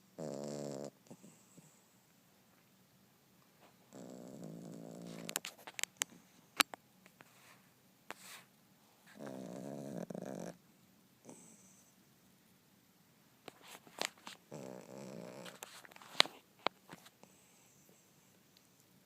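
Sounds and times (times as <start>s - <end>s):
dog snoring: 0.2s - 1.8s, 3.9s - 5.4s, 9.1s - 10.6s, 11.2s - 11.9s, 14.5s - 15.7s.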